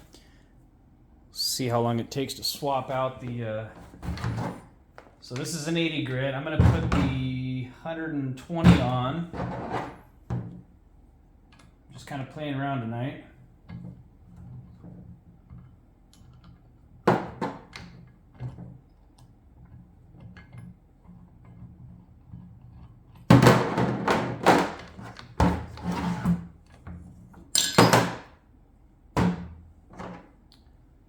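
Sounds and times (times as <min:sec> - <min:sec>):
tool parts thunking and clinking: 0:27.5 - 0:28.3.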